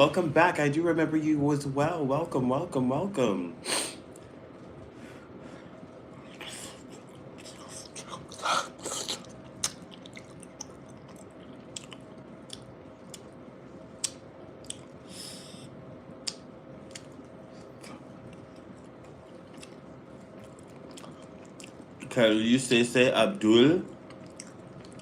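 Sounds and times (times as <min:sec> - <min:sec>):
close-up chewing: 0:06.2 - 0:13.3, 0:16.2 - 0:22.1, 0:23.9 - 0:25.0
wet mouth clicks and smacks: 0:14.0 - 0:14.9, 0:16.2 - 0:17.1.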